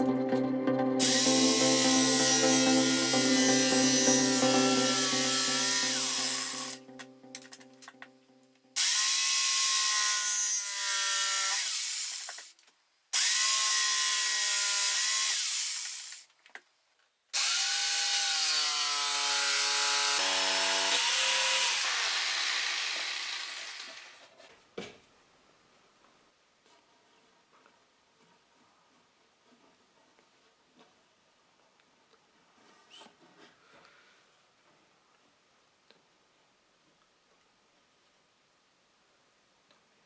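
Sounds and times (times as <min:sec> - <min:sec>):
jigsaw cutting wood: 0:01.0 - 0:06.8, 0:17.4 - 0:24.3.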